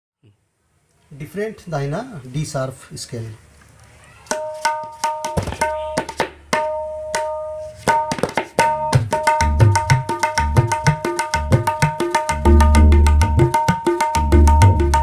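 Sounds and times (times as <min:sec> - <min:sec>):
tabla ringing strokes: 0:04.3 - 0:15.0.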